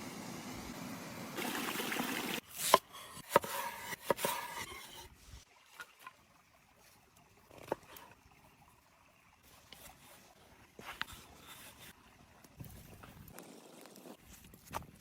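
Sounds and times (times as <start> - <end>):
stream water rushing: 1.4 - 2.4.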